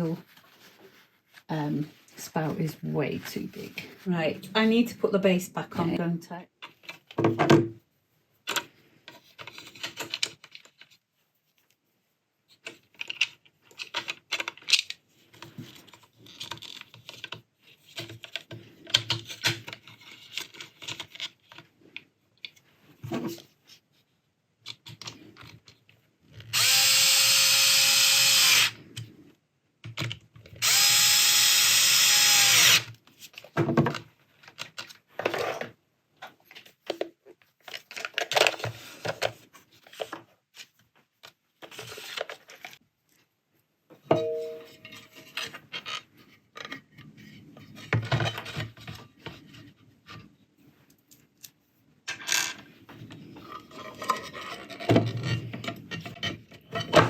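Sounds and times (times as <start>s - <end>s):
clicks and knocks of parts handled: 8.4s - 11.0s, 12.5s - 23.5s, 24.6s - 26.5s, 29.8s - 30.6s, 33.2s - 42.8s
electric screwdriver running: 26.5s - 28.8s, 30.6s - 32.9s.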